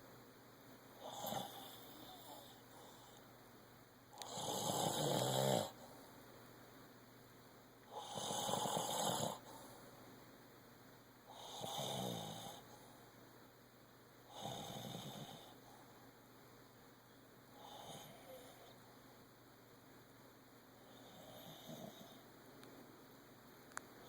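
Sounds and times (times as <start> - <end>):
person snoring: 4.2 - 5.8, 7.9 - 9.5, 11.3 - 12.6.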